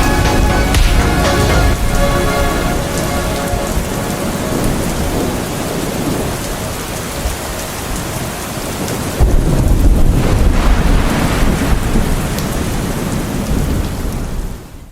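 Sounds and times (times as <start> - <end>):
slowed reverb music: 0.0 - 6.2
low thunder rumble: 0.0 - 14.7
rain falling: 0.0 - 14.9.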